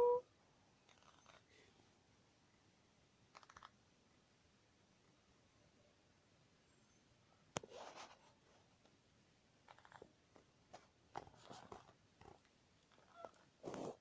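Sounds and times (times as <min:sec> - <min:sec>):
parrot nibbling and clicking: 0:03.3 - 0:03.7.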